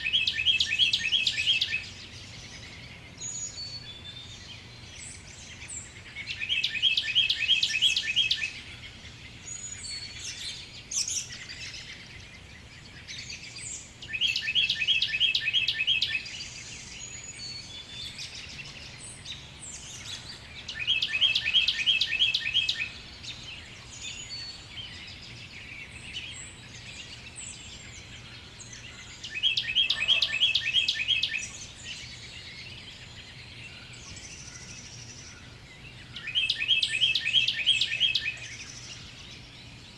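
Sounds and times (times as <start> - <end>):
faint bird chirps: 0.0 - 39.9
songbird trilling song: 0.0 - 39.9.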